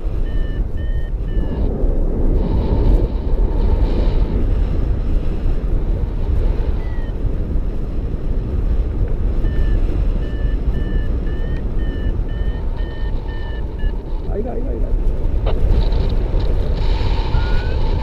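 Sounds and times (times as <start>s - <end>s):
variometer beeping: 0.0s - 1.7s, 6.7s - 7.3s, 9.2s - 14.6s, 17.3s - 18.0s
wind rushing on microphone: 0.0s - 18.0s.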